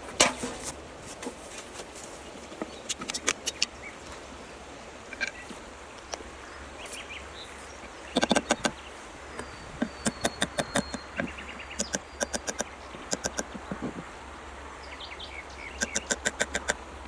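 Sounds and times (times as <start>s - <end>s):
steady low hum: 0.0s - 17.0s
faint high chirps: 15.4s - 16.8s.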